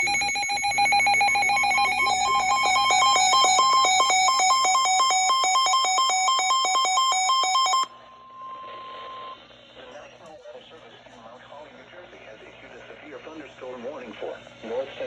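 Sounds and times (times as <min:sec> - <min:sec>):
electronic alarm warble: 0:00.0 - 0:09.4.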